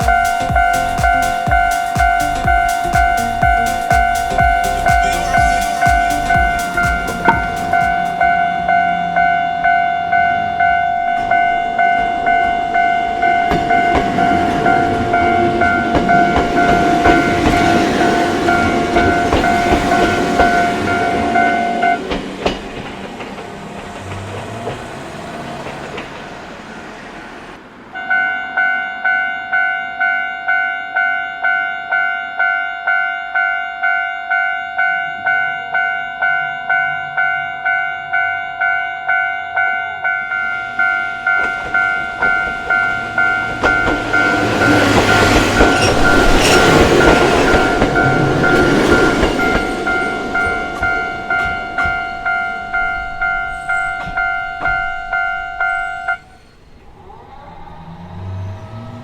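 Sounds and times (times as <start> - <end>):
train wheels clacking on rails: 0.0 - 8.5, 11.1 - 27.2, 40.3 - 56.4
level-crossing electronic bell: 0.0 - 22.1, 28.0 - 56.3
train noise: 0.0 - 59.0.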